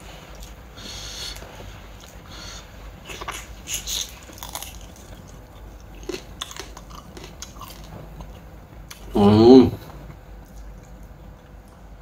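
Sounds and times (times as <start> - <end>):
person chewing: 0.3 - 9.2
crunchy bites: 3.2 - 7.9.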